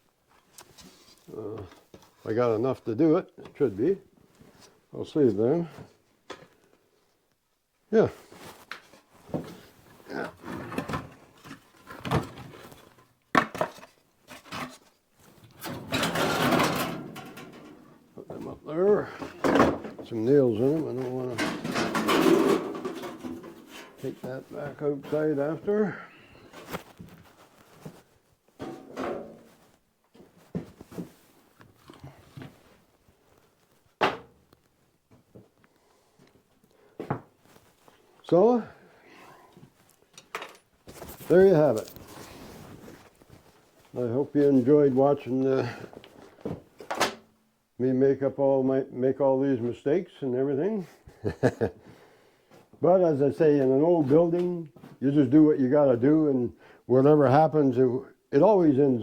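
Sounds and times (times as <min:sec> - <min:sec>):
items knocking and clunking: 0:08.7 - 0:24.4, 0:26.5 - 0:32.7, 0:33.9 - 0:35.5, 0:40.1 - 0:43.6
wood pieces knocking: 0:21.3 - 0:24.0.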